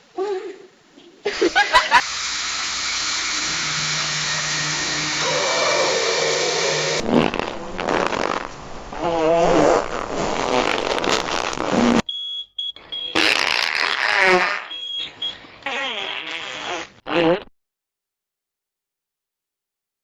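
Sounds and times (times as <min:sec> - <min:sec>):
comedic fart sound effects: 0:05.2 - 0:12.1, 0:13.1 - 0:14.8, 0:15.6 - 0:17.5.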